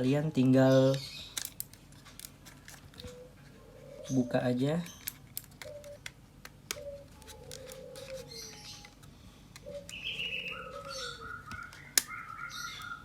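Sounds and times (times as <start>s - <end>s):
birds cooing: 2.9s - 6.1s, 6.7s - 13.0s
high repeated bird chirp: 9.6s - 13.0s.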